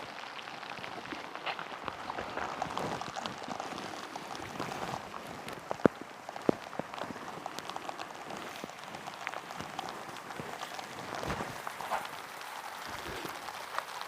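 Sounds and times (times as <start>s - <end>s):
rain falling: 0.0s - 14.0s.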